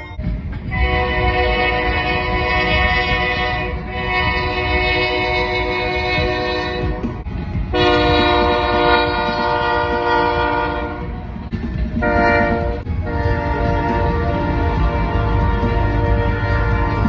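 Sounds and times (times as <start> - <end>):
low rumble of train: 0.0 - 17.0
locomotive air horn blasts: 0.7 - 11.2, 12.0 - 17.0.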